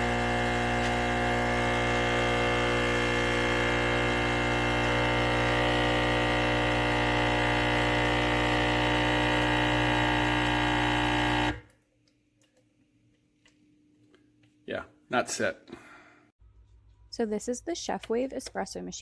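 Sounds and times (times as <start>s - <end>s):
espresso machine pump humming: 0.0s - 11.7s.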